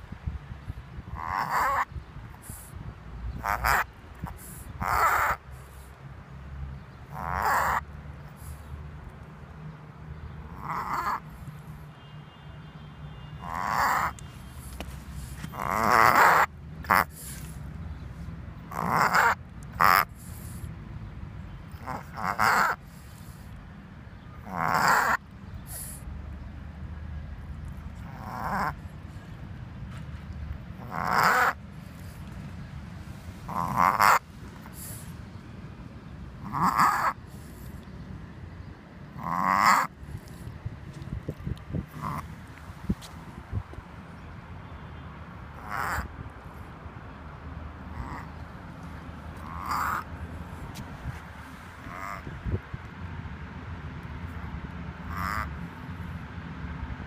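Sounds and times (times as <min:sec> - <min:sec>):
dog reverse sneezing: 0:24.6 - 0:26.1.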